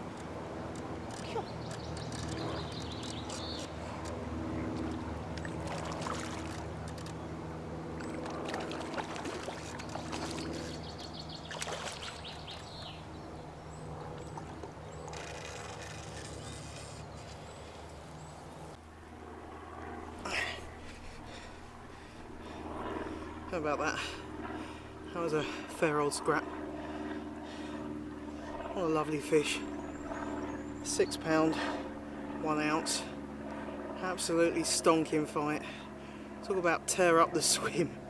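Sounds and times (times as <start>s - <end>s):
water splashing and sloshing: 4.7s - 6.7s, 8.0s - 10.8s, 11.4s - 12.8s.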